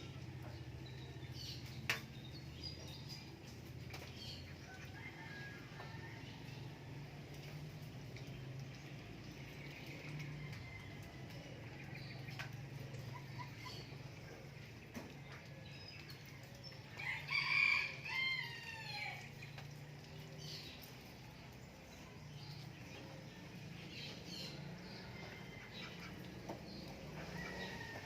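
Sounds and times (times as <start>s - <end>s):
rooster crowing: 27.2s - 28.0s.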